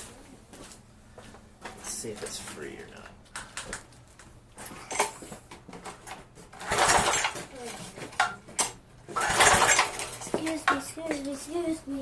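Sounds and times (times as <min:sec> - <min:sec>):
recoil starter cord pulls: 0:06.6 - 0:07.4, 0:09.2 - 0:10.2.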